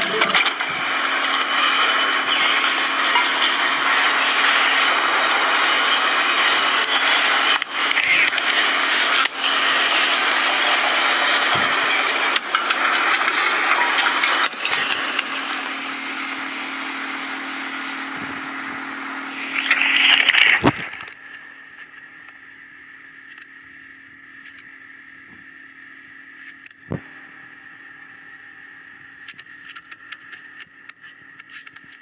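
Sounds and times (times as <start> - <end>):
loud rushing mechanical noise: 0.0 - 21.8
steady low hum: 0.0 - 32.0.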